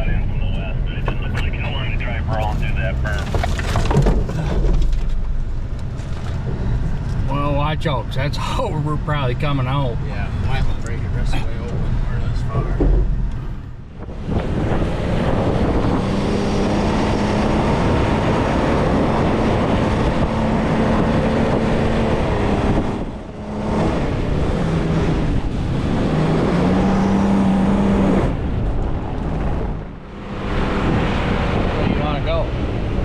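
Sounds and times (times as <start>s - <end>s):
vehicle engine running: 0.0s - 7.3s
wind and road noise: 0.0s - 33.0s.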